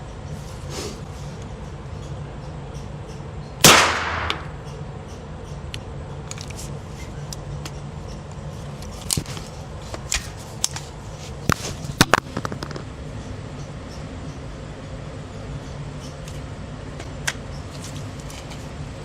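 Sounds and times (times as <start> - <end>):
steady low hum: 0.0 - 19.0
sharp cracks and clicks: 3.6 - 4.7, 12.0 - 12.9.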